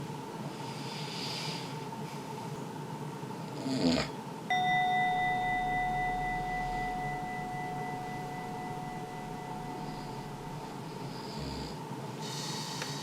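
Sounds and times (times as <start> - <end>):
struck bell tone: 4.5 - 11.2.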